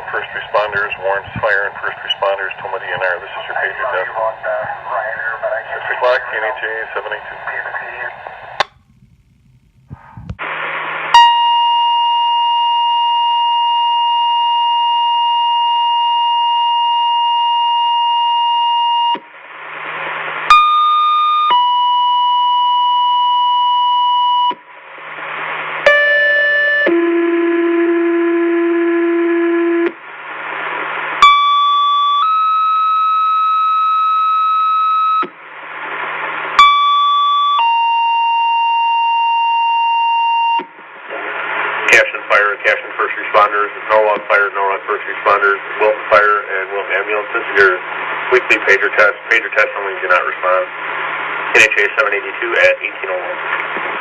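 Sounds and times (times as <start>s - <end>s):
radio hiss bursts: 0.0s - 11.2s, 40.6s - 54.0s.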